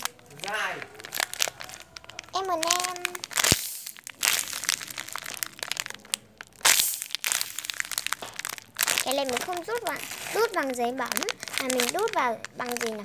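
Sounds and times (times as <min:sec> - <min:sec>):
paper crinkling and crunching: 0:00.0 - 0:13.0.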